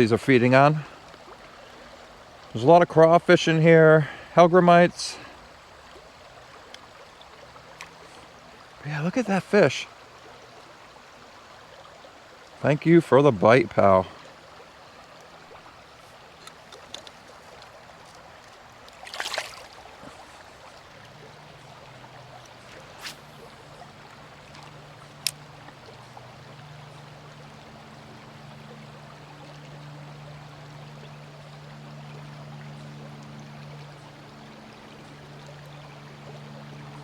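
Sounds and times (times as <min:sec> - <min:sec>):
creek water rushing: 0:00.0 - 0:37.0
short splash: 0:18.9 - 0:20.4, 0:22.4 - 0:23.8.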